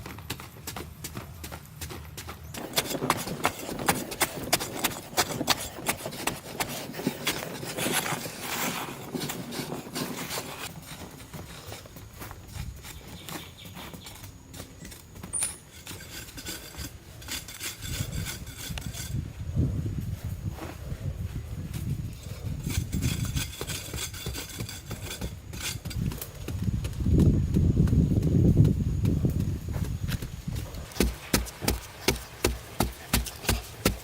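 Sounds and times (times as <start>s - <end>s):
rubbing and scraping: 2.5s - 34.0s
hand tools knocking: 30.9s - 34.0s.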